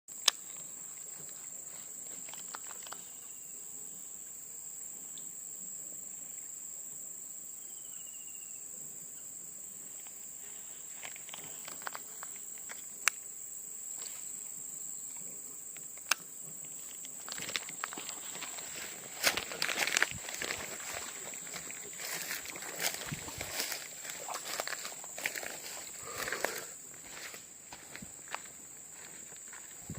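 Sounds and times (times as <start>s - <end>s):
insects trilling: 0.1s - 29.9s
rustling: 16.8s - 27.2s.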